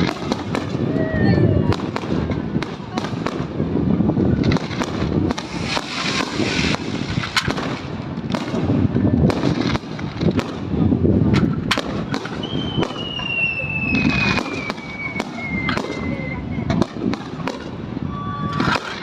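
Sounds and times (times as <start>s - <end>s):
continuous low booming: 0.0s - 12.9s
fireworks bangs and crackles: 0.0s - 19.0s.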